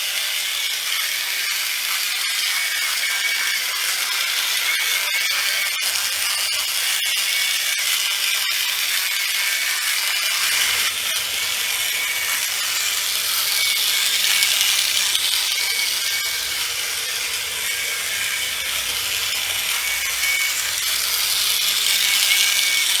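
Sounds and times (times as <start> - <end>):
toy train motor whirring: 0.0 - 23.0.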